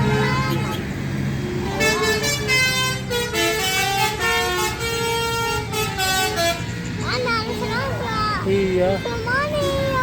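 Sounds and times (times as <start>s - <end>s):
multi-tone bus horn tune: 0.0s - 1.0s, 1.6s - 6.8s.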